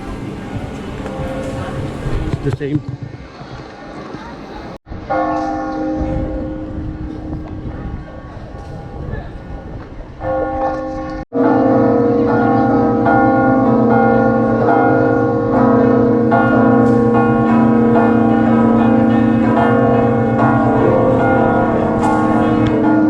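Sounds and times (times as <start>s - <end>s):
church bells pealing: 0.0s - 2.5s, 5.0s - 7.8s, 10.2s - 23.0s.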